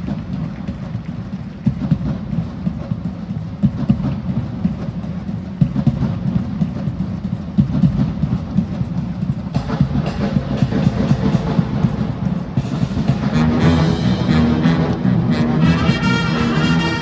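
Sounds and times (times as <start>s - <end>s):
drums and percussion: 0.0s - 17.0s
brass chords: 9.6s - 17.0s.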